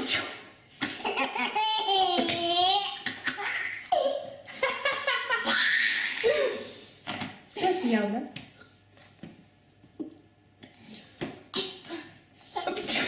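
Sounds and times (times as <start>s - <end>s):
baby laughing: 0.8s - 6.5s
person sneezing: 11.5s - 12.1s, 12.7s - 13.0s.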